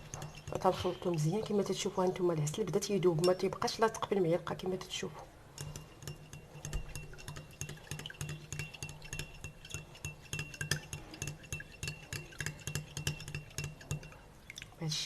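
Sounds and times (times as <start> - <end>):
metal spoon clinking against glass: 0.0 - 1.9, 5.6 - 14.6.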